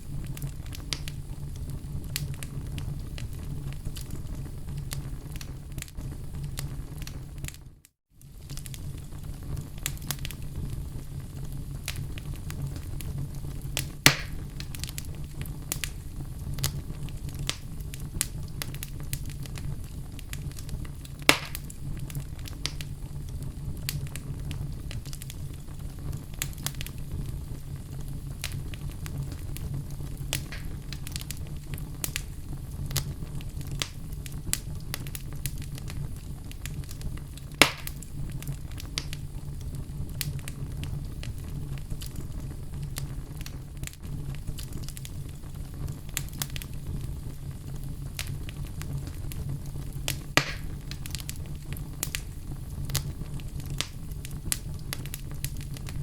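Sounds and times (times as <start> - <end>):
burning logs crackling: 0.0 - 56.0
fireplace flames rumbling: 0.0 - 56.0
loud sharp pops: 14.0 - 14.5, 21.2 - 21.7, 30.3 - 31.2, 37.6 - 38.0, 50.1 - 51.3.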